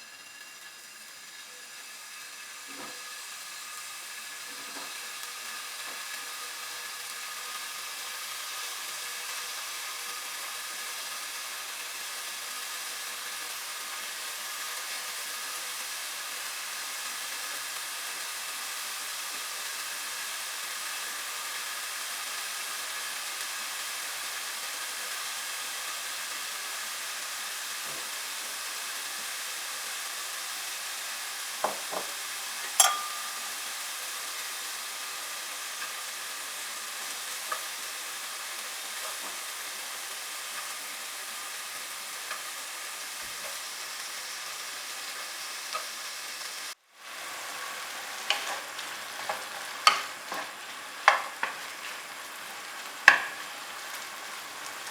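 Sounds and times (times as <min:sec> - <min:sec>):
chicken sizzling in a pan: 0:00.0 - 0:54.9
utensil clicking against pan: 0:31.6 - 0:33.6, 0:48.2 - 0:52.0, 0:53.0 - 0:53.5.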